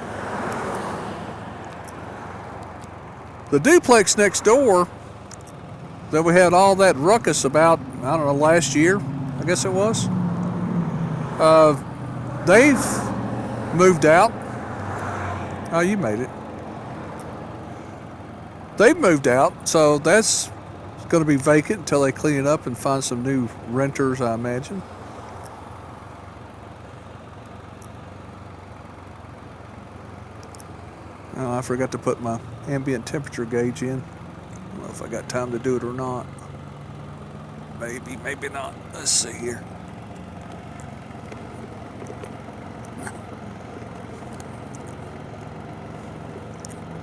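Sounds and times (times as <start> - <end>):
motorcycle engine idling: 1.4 - 4.0, 4.6 - 10.0, 15.5 - 47.0
faint clicks: 5.2 - 5.6.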